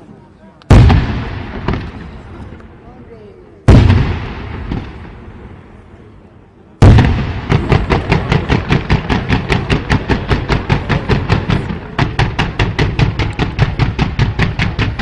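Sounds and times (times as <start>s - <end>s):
firework bang with rumble: 0.7s - 2.2s, 3.7s - 5.2s, 6.8s - 15.0s
rapid firework pops: 6.8s - 15.0s.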